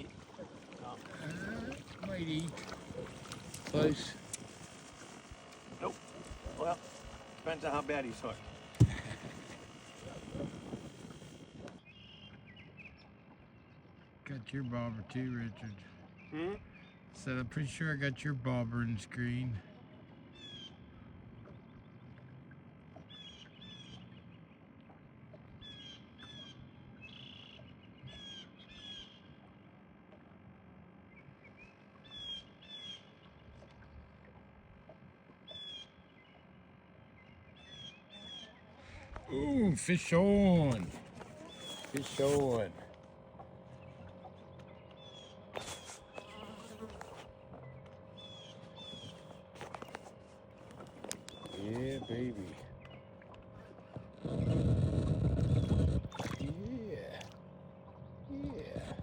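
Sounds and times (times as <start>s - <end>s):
steady buzzing hum: 0.0s - 59.0s
faint bird calls: 19.6s - 22.2s, 22.9s - 24.8s, 25.4s - 29.8s, 31.0s - 34.2s, 35.4s - 59.0s.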